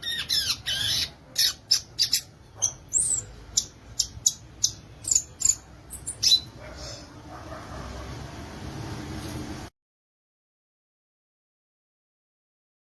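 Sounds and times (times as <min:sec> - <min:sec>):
bird singing high sharp notes: 0:00.0 - 0:06.5.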